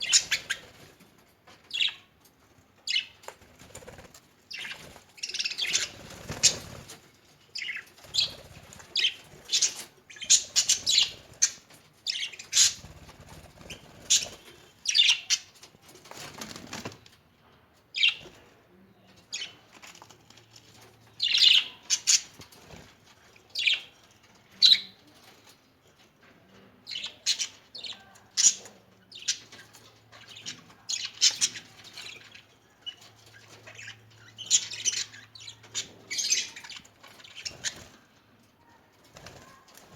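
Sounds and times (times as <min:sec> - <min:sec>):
budgerigars chirping and squawking: 0:00.0 - 0:01.0, 0:01.7 - 0:02.1, 0:04.5 - 0:07.0, 0:07.6 - 0:15.6, 0:21.2 - 0:22.5, 0:26.9 - 0:38.0
wing flapping: 0:05.7 - 0:07.0, 0:12.6 - 0:14.6.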